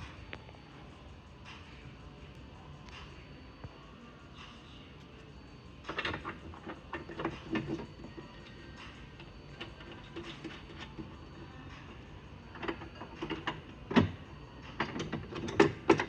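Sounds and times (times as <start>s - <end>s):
light metal clicks and knocks: 12.5s - 16.0s.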